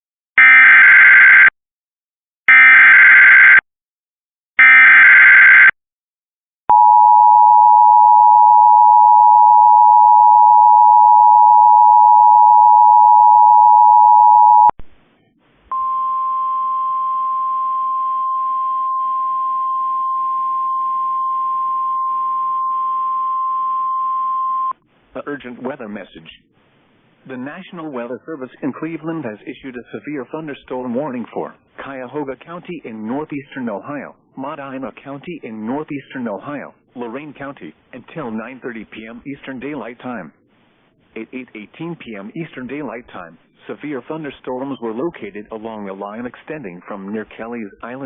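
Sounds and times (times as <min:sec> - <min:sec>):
steady warning alarm tone: 0:04.6 - 0:05.7.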